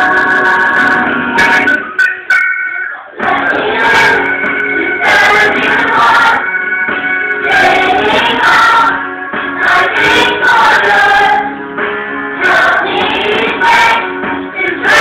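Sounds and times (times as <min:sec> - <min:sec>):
choir singing worship song: 0:00.0 - 0:01.7, 0:03.2 - 0:06.6, 0:07.4 - 0:11.6, 0:12.4 - 0:15.0
instrumental backing: 0:00.0 - 0:15.0.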